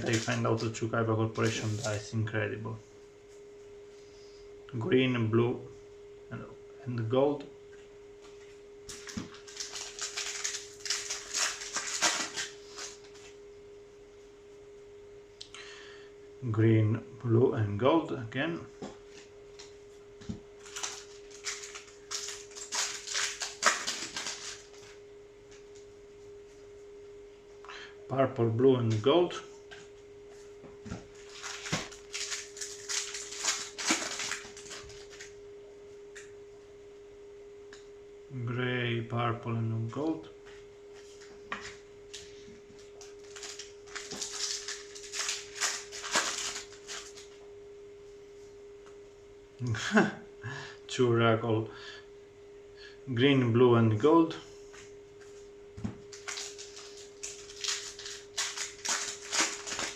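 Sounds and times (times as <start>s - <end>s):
foil pack crinkling and tearing: 0.0s - 2.1s, 8.9s - 13.4s, 20.6s - 25.0s, 31.1s - 35.4s, 42.2s - 47.4s, 56.1s - 59.9s
steady hum: 0.0s - 59.9s.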